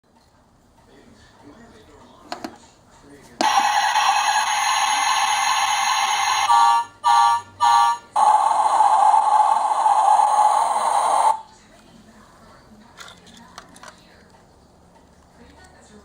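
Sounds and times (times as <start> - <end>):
toy truck engine sound effect: 3.4 - 11.4.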